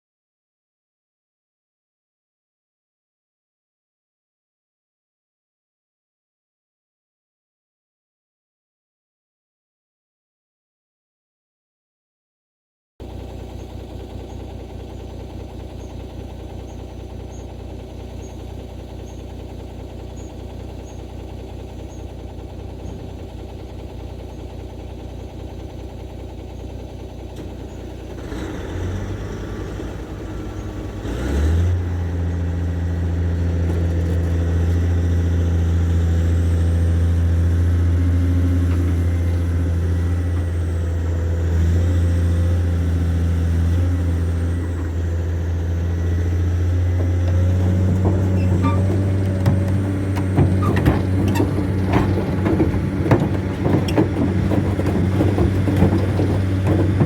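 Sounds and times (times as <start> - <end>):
heavy diesel engine running: 13.0 - 57.0.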